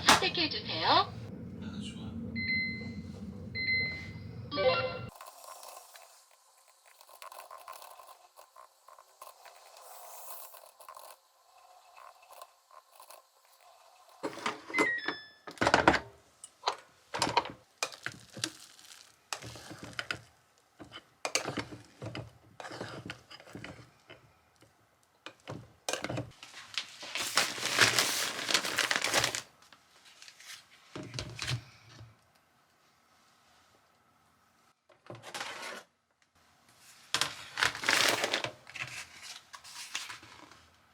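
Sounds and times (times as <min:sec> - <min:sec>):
objects knocking and clattering: 0:25.3 - 0:26.4.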